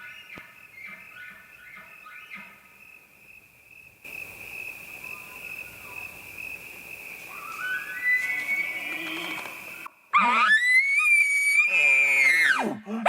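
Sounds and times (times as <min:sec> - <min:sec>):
crickets trilling: 0:00.0 - 0:12.5
elk bugling: 0:04.2 - 0:12.6.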